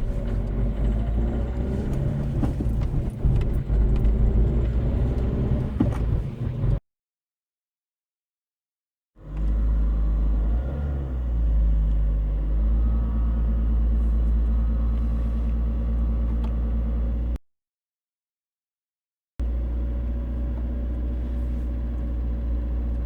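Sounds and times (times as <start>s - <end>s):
diesel engine running: 0.0s - 6.8s, 9.2s - 17.4s.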